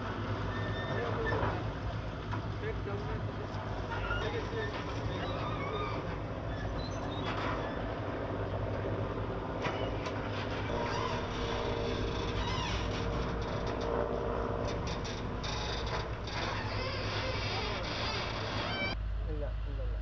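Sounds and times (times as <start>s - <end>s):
engine humming: 0.0s - 20.0s.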